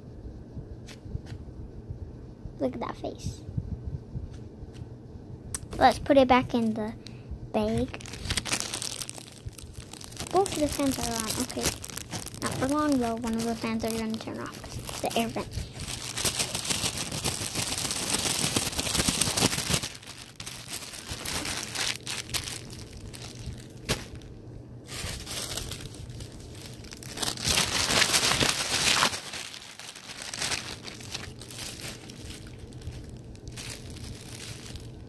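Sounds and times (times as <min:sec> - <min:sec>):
plastic bag crinkling and tearing: 0:07.6 - 0:24.3, 0:24.9 - 0:35.0.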